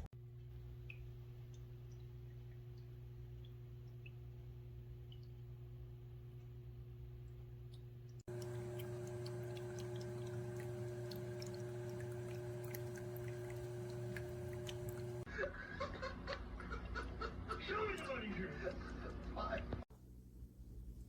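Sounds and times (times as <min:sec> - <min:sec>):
water trickling and dripping: 0:00.2 - 0:06.6, 0:07.2 - 0:15.3
fountain pump humming: 0:08.3 - 0:15.3.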